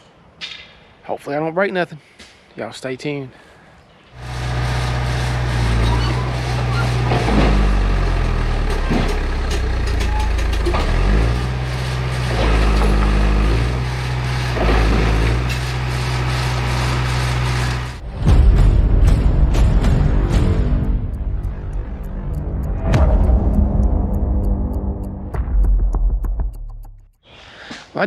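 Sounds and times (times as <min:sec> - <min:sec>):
bulldozer engine running hard: 0:04.2 - 0:18.0, 0:19.4 - 0:25.3
machine knocks and rattles: 0:04.6 - 0:18.0.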